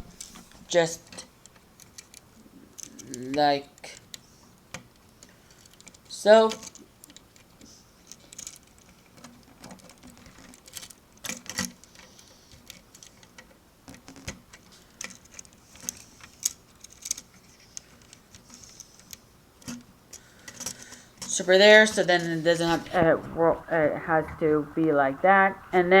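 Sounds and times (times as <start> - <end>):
plastic pieces clicking and rattling: 3.9 - 21.3.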